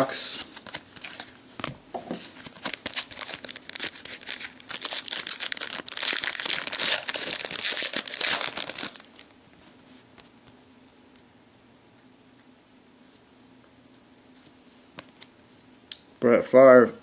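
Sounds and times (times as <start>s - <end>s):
foil wrapper tearing and crinkling: 2.4s - 9.3s.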